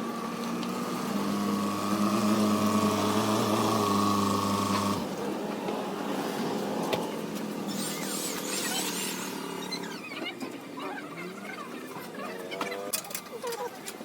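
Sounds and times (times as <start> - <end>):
motor humming: 0.0 - 5.4.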